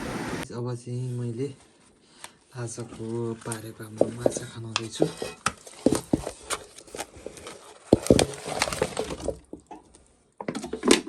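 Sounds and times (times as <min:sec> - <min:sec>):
pots and dishes clattering: 0:04.0 - 0:06.4.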